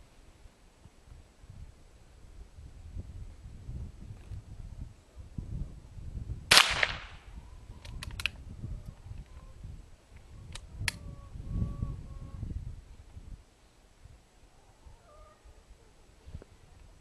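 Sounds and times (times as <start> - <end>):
rifle shot: 6.5 - 7.3.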